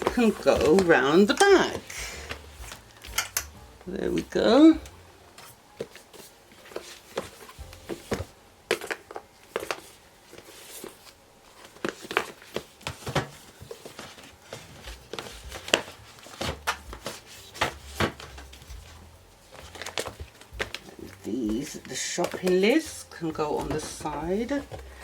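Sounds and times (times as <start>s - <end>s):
packets crinkling: 5.4s - 25.0s.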